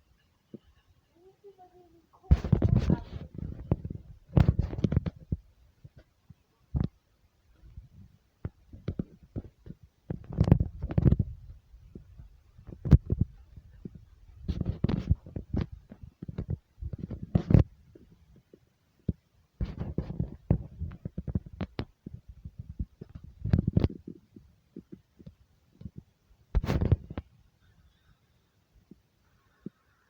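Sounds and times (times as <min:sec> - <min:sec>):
knocks thumps and rattles: 0:02.3 - 0:06.0.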